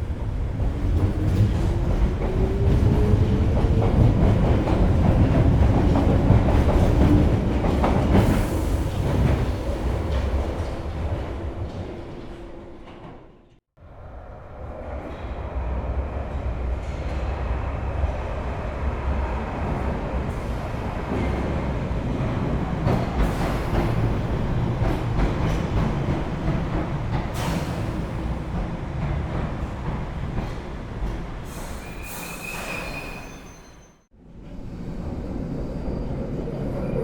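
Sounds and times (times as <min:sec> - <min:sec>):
train rumbling on rails: 0:00.0 - 0:37.0
high wheel squeal: 0:31.5 - 0:34.1.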